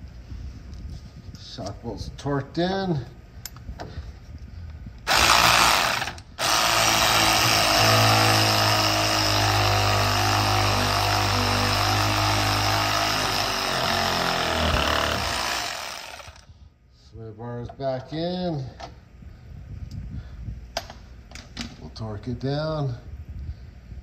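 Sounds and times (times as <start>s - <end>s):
handheld power tool running: 5.1s - 16.5s.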